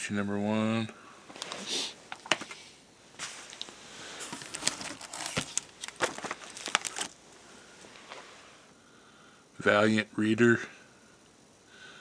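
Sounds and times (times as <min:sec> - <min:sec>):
comic books clicking and rustling: 0:03.2 - 0:07.2.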